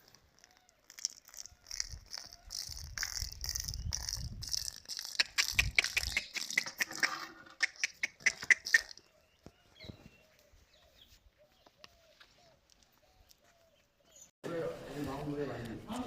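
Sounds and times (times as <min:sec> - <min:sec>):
animal rattling chirping calls: 0:00.3 - 0:09.3.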